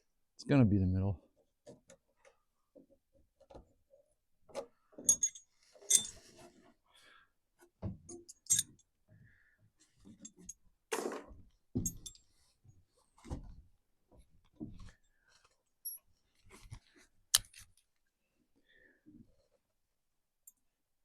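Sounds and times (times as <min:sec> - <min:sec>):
metal hardware clinking: 0:05.0 - 0:06.2, 0:08.1 - 0:08.9.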